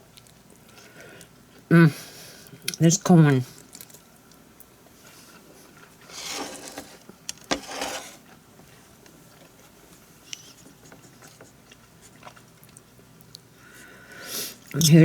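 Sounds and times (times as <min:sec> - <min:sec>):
utensils scraping a plate: 0:06.0 - 0:08.3.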